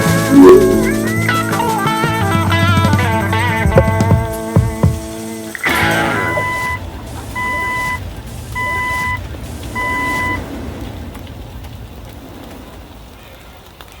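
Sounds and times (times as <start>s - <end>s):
electronic beeps: 0.3s - 1.2s, 5.6s - 6.8s, 7.4s - 8.0s, 8.6s - 9.2s
low hum: 0.3s - 1.4s.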